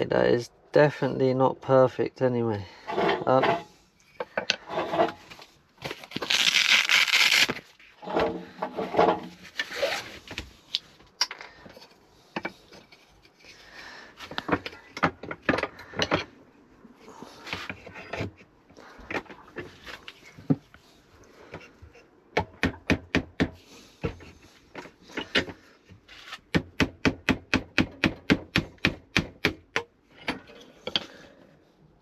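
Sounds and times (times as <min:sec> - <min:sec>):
wood scraping on work surface: 0:02.8 - 0:03.8, 0:04.6 - 0:05.5, 0:08.0 - 0:09.8.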